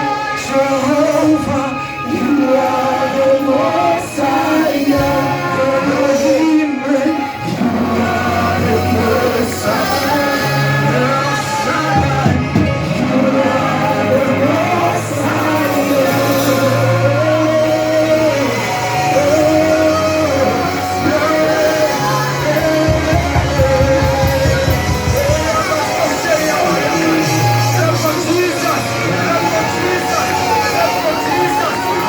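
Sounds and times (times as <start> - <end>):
live band playing: 0.0 - 32.0
voices singing worship song: 0.0 - 32.0
long held bass notes: 7.4 - 30.1.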